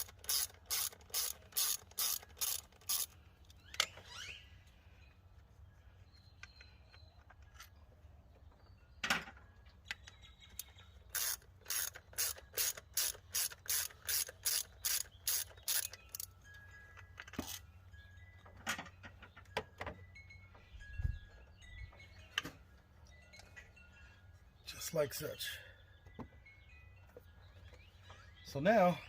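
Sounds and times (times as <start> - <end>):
ratchet wrench clicking: 0.0 - 3.2, 11.1 - 16.3.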